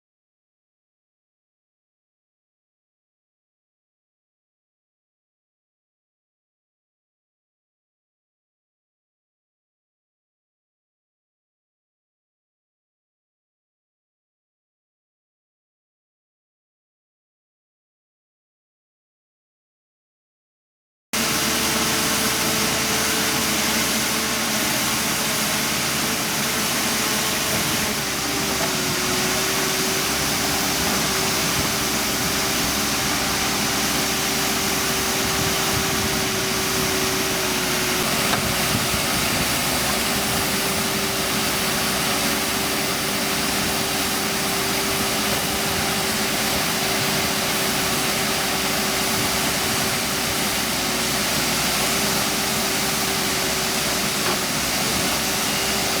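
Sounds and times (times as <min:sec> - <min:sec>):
diesel engine running: 0:21.2 - 0:56.0.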